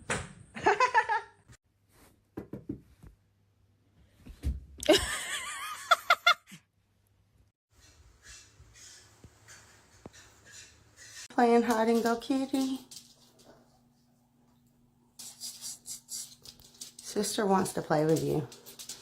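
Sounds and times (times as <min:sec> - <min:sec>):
person laughing: 0:00.6 - 0:01.4, 0:04.8 - 0:06.6.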